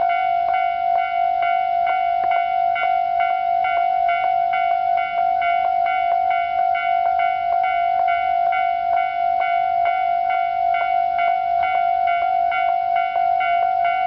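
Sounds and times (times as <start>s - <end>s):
level crossing warning bell: 0.0s - 14.0s.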